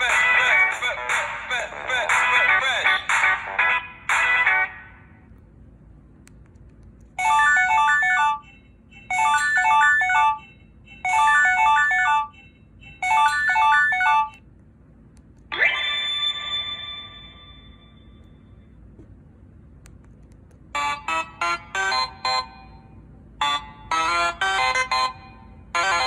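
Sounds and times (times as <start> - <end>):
mobile phone ringtone: 7.2 - 8.5, 9.1 - 12.4, 13.0 - 14.4, 15.6 - 18.0, 20.8 - 26.0
tone with upward swoop: 15.5 - 18.0.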